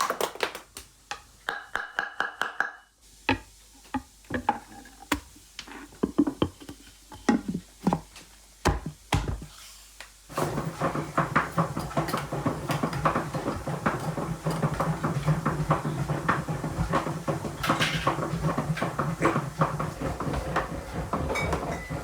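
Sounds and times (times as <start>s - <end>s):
knocks: 10.4s - 22.0s.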